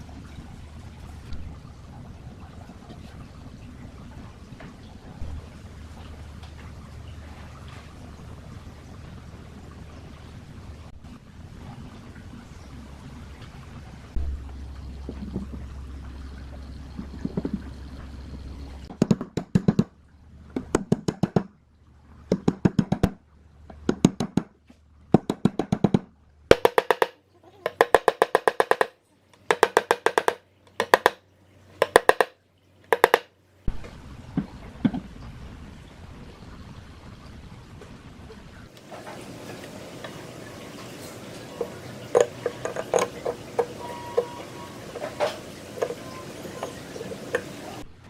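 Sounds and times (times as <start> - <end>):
steady low hum: 0.0 - 19.0
rapid wood-block drum rolls: 25.2 - 31.2, 31.8 - 33.3.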